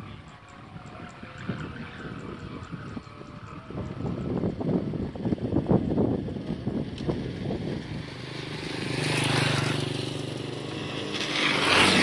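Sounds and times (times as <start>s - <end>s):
road noise: 0.0s - 12.0s
wind buffeting microphone: 0.0s - 12.0s
vehicle engine passing: 6.0s - 12.0s.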